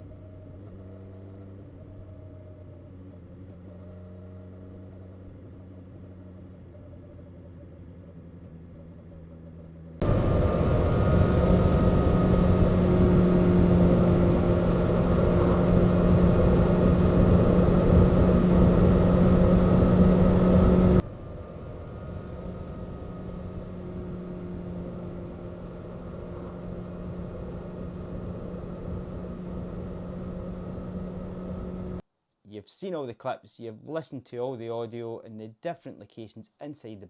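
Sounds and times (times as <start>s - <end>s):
motorcycle engine rumble: 0.0s - 32.0s.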